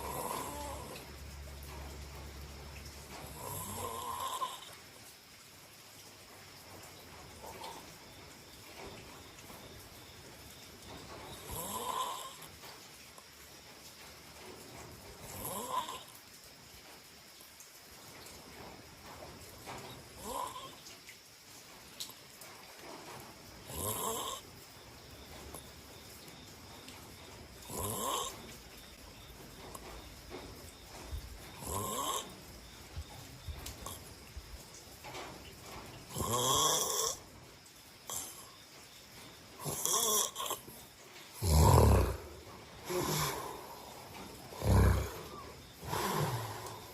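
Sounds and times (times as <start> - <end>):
person snoring: 0.0 - 1.0, 3.3 - 4.7, 11.4 - 12.5, 15.3 - 16.1, 20.2 - 20.8, 27.6 - 28.4, 31.6 - 32.3, 36.1 - 37.2, 39.6 - 40.7, 41.4 - 46.9
soft breathing: 42.1 - 46.9.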